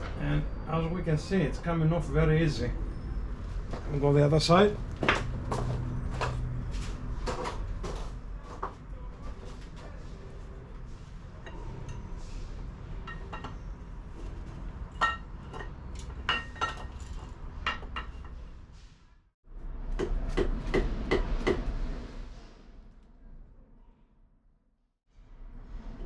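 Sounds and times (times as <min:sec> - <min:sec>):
metal tools and bolts clinking: 0:14.9 - 0:18.4.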